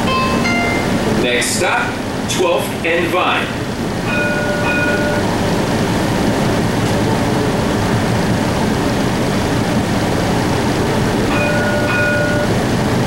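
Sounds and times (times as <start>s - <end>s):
streetcar wheels rumbling on rail: 0.0s - 13.0s
electronic chime: 4.1s - 5.3s, 11.3s - 12.6s.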